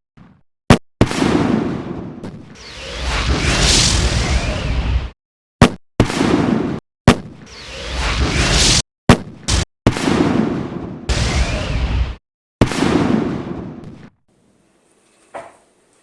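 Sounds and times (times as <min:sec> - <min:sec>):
fireworks whooshing: 0:02.6 - 0:05.2, 0:07.5 - 0:08.8
low rumble: 0:02.6 - 0:05.2.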